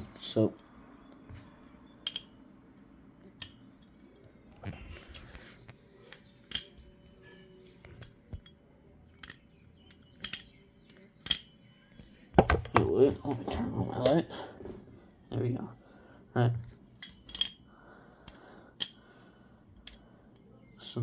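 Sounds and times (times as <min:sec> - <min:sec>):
balisong handles clicking: 0:02.0 - 0:06.8, 0:09.2 - 0:13.0, 0:18.2 - 0:19.1, 0:19.8 - 0:20.5.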